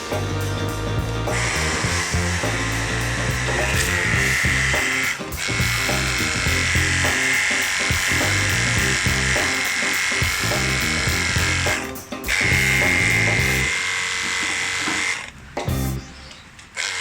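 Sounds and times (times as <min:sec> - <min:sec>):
background music with beat: 0:00.0 - 0:13.7, 0:15.6 - 0:16.4.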